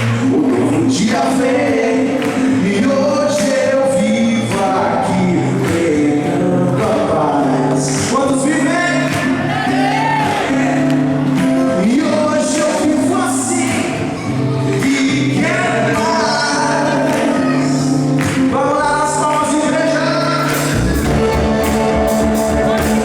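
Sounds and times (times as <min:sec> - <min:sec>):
gospel band music: 0:00.0 - 0:23.0
voices singing: 0:00.0 - 0:23.0
drums: 0:20.4 - 0:23.0.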